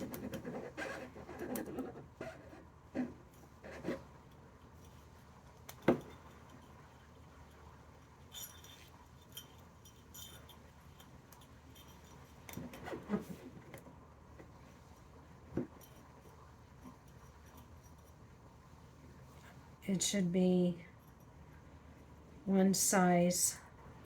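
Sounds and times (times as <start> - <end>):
metal ring clinks and taps: 5.6 - 7.7, 8.3 - 12.8.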